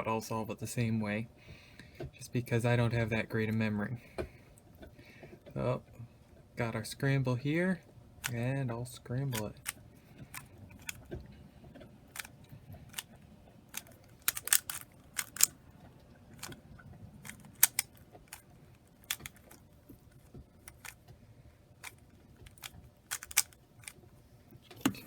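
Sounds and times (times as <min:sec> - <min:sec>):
puzzle cube layers clicking: 0:13.7 - 0:15.5, 0:17.2 - 0:18.4, 0:19.0 - 0:19.6, 0:21.8 - 0:24.0.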